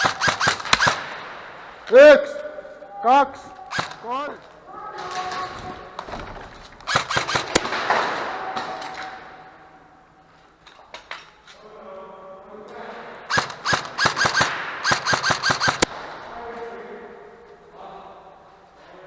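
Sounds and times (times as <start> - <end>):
airsoft guns firing: 0.0 - 2.0, 3.1 - 9.7, 13.3 - 16.5.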